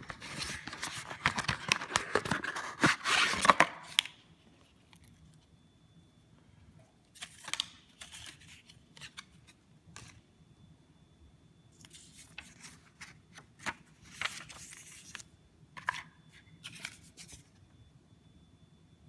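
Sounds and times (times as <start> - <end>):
packaging rustling and scraping: 0.0 - 5.1, 11.9 - 17.6.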